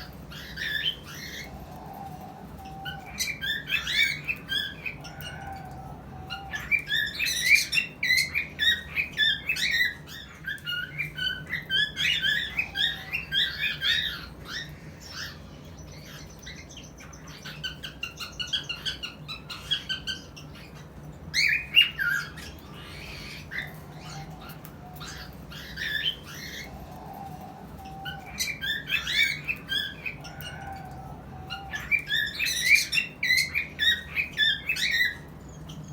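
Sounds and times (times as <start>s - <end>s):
cockatiel chirping and squawking: 0.0s - 35.9s.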